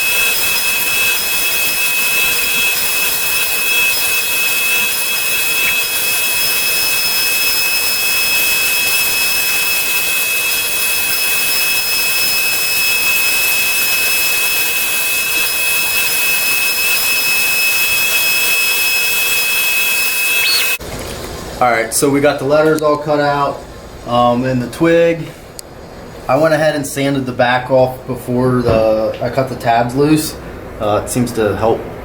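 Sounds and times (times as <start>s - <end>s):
power tool hissing and whining: 0.0s - 20.8s.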